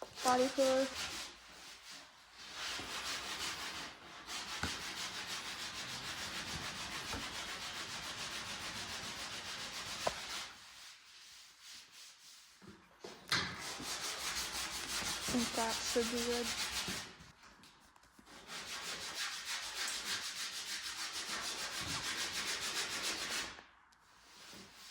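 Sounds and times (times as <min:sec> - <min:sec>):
rhythmic hand scraping: 0:00.2 - 0:12.5, 0:13.6 - 0:17.1.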